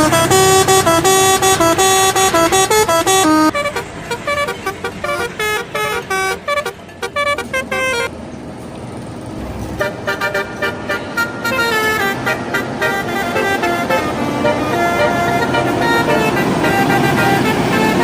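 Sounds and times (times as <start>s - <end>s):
multi-tone bus air horn: 0.0s - 8.1s, 9.8s - 18.0s
engine and road noise: 0.0s - 18.0s.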